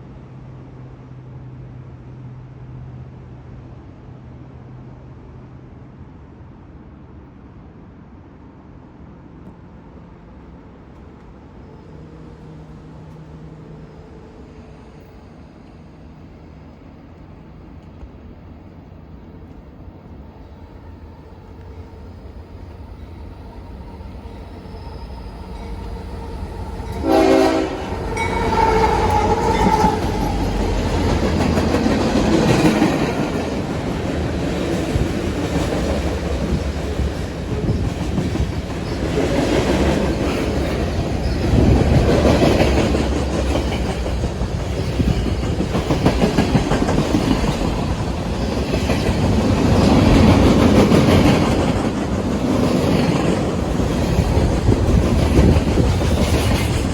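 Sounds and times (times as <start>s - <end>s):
freight train rumbling past: 0.0s - 56.9s
locomotive air horn: 24.9s - 30.5s.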